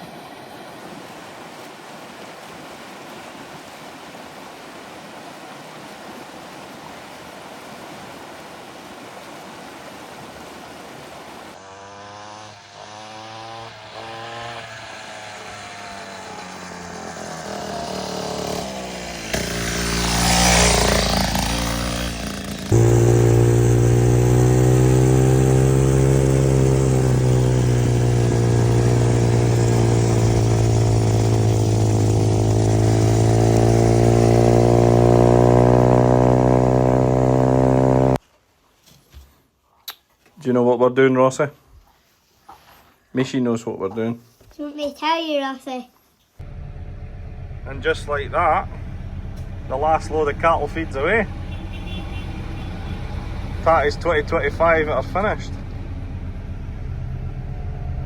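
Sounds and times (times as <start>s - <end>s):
vehicle engine revving: 11.5s - 38.2s, 46.4s - 58.0s.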